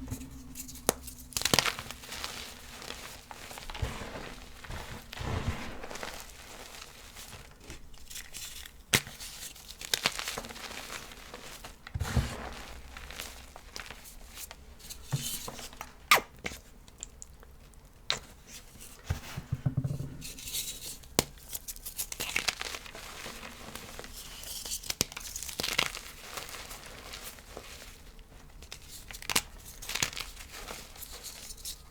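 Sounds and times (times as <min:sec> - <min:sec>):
chalk chunks crunching: 0:00.5 - 0:11.7.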